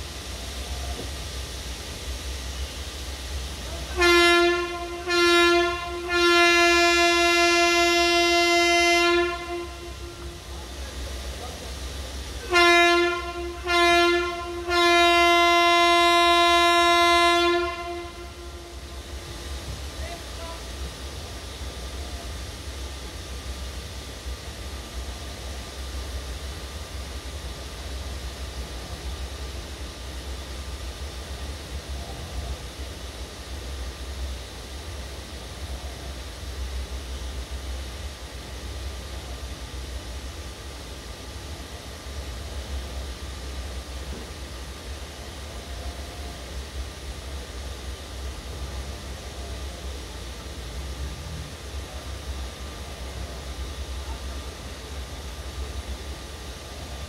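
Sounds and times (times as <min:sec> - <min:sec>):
train rumble and hiss: 0:00.0 - 0:57.0
electric locomotive horn blasts: 0:03.9 - 0:10.5, 0:12.4 - 0:19.3.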